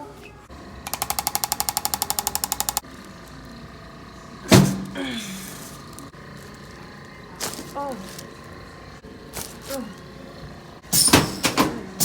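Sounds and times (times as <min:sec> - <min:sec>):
rapid mechanical tapping: 0:00.8 - 0:04.9.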